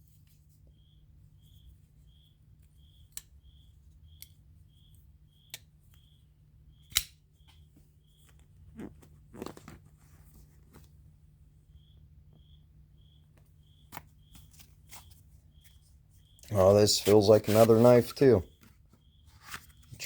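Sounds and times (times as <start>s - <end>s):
rustling: 8.2s - 11.0s, 14.0s - 20.0s.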